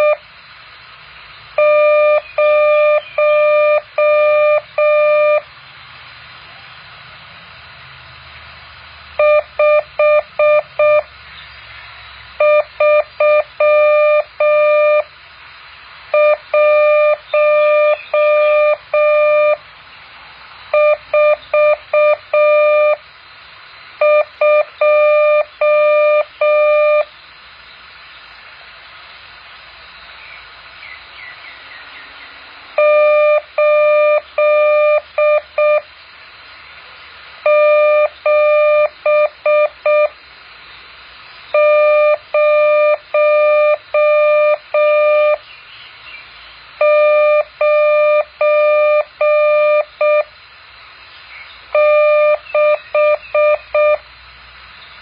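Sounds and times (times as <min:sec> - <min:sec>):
morse code beeps: 0:00.0 - 0:00.2, 0:01.6 - 0:05.5, 0:09.2 - 0:11.1, 0:12.4 - 0:15.1, 0:16.1 - 0:19.6, 0:20.7 - 0:23.0, 0:24.0 - 0:27.1, 0:32.8 - 0:35.9, 0:37.4 - 0:40.2, 0:41.5 - 0:45.4, 0:46.8 - 0:50.3, 0:51.7 - 0:54.0
faint hiss: 0:00.0 - 0:55.0.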